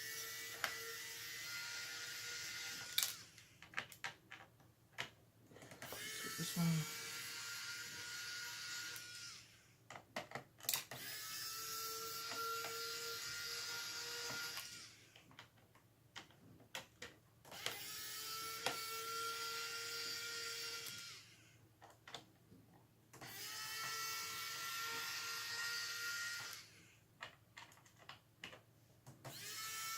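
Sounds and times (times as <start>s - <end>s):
electric screwdriver whirring: 0.0s - 3.5s, 5.7s - 9.6s, 10.6s - 15.3s, 17.5s - 21.5s, 23.2s - 26.8s, 29.2s - 29.9s.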